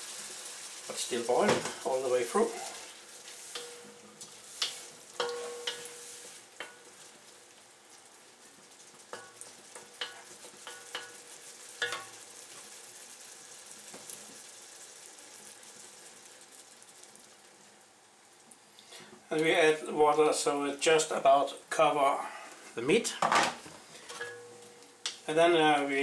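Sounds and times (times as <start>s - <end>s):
food sizzling in hot oil: 0.0s - 19.7s, 23.3s - 26.0s
utensil knocking and scraping pan: 3.4s - 6.9s, 9.1s - 11.2s, 11.8s - 12.2s.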